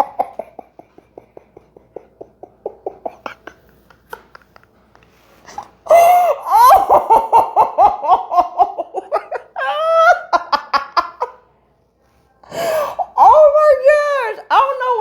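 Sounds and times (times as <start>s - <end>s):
person laughing hard: 0.0s - 4.7s, 5.9s - 11.4s.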